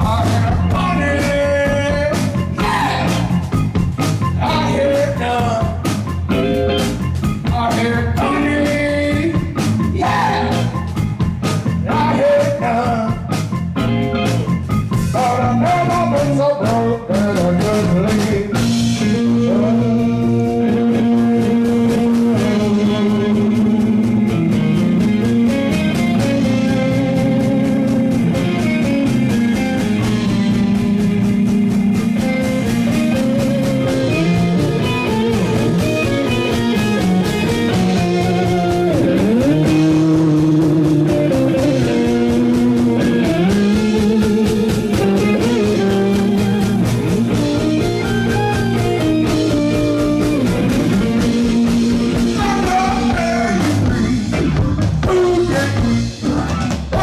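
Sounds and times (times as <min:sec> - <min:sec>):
rock band playing live: 0:00.0 - 0:57.0.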